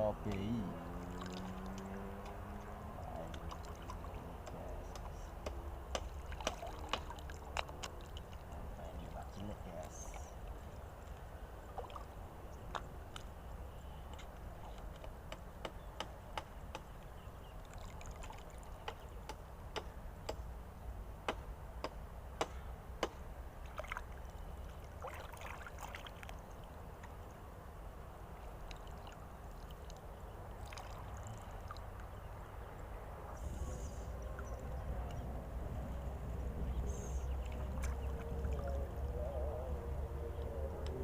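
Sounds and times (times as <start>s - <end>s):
water trickling and splashing: 0.0s - 20.7s, 23.1s - 41.0s
steady low rumble: 30.0s - 41.0s.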